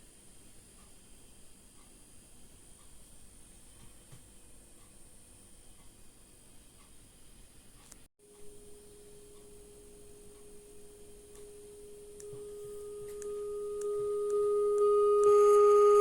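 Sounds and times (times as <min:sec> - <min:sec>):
mid-pitched test tone: 0:08.2 - 0:16.0
higher tone: 0:08.6 - 0:16.0.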